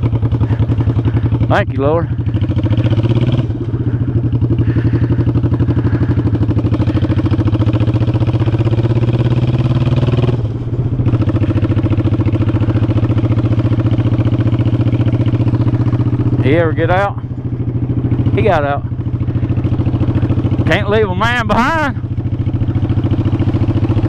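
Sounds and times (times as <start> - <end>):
motorcycle engine running: 0.0 - 24.0.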